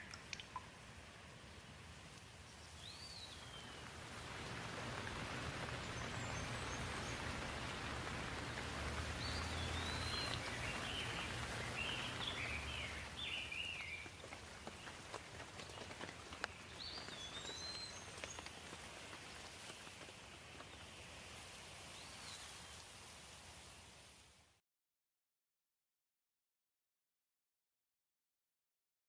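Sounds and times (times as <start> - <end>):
steady rain falling: 0.0 - 24.6
bird chirping: 9.2 - 14.2.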